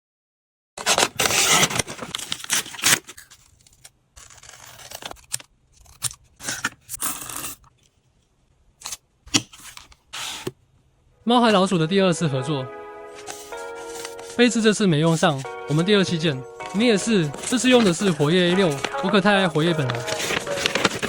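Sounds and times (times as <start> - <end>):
paper crackling and scraping: 0.8 - 7.4, 13.1 - 21.0.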